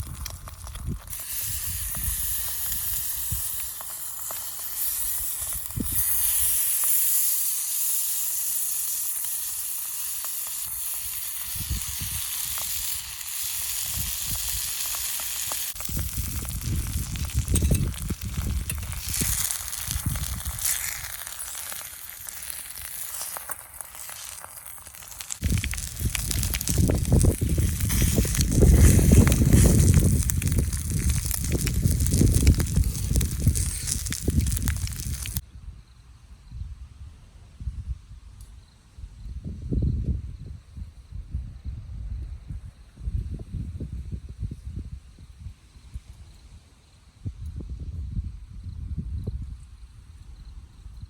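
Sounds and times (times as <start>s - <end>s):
food sizzling in a frying pan: 0.0s - 35.4s
low rumbles: 25.2s - 35.4s.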